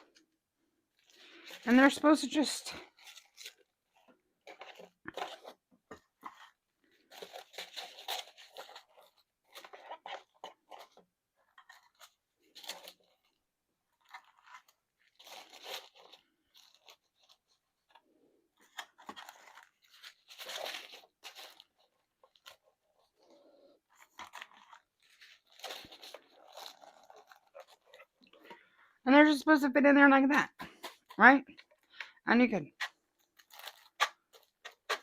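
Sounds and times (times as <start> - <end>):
plastic bags crinkling: 18.6 - 28.8.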